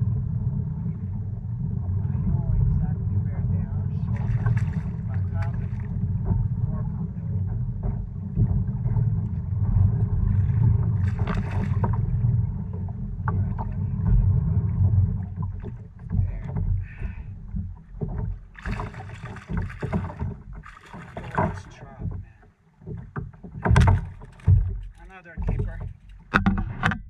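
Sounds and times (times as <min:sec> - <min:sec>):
low rumble of water and wind: 0:00.0 - 0:27.0
splashing and rustling: 0:01.8 - 0:26.8.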